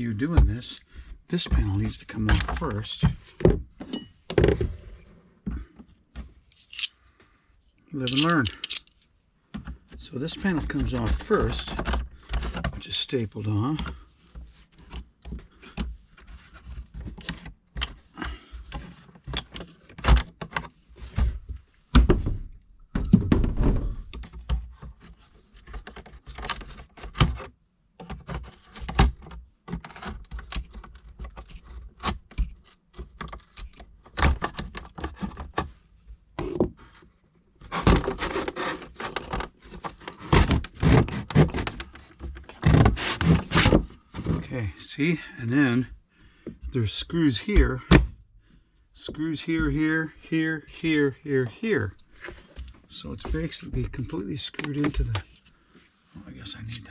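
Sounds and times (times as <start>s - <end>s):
wall panel knocking and scraping: 37.6s - 44.6s.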